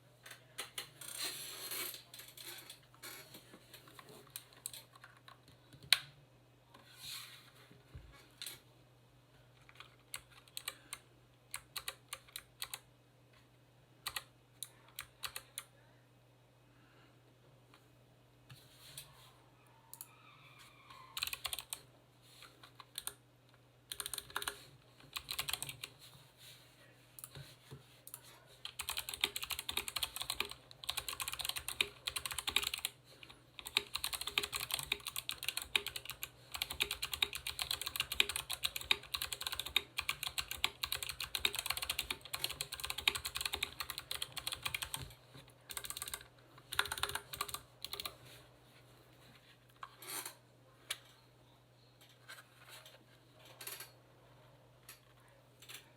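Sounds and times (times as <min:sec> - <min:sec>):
mechanical keyboard typing: 0:09.7 - 0:10.8, 0:11.6 - 0:12.8, 0:14.1 - 0:14.3, 0:14.9 - 0:15.7, 0:21.2 - 0:21.8, 0:23.9 - 0:25.9, 0:28.6 - 0:33.0, 0:33.6 - 0:45.1, 0:45.7 - 0:48.2.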